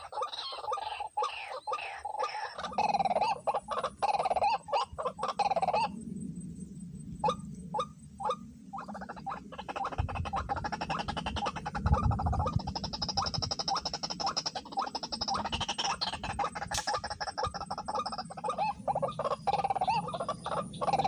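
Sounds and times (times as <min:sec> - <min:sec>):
steady low hum: 0:02.7 - 0:21.0
bird calling repeated notes: 0:07.2 - 0:21.0.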